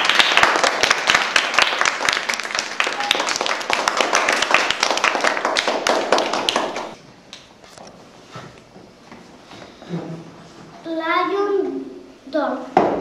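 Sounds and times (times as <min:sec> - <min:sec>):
children clapping: 0:00.0 - 0:07.0.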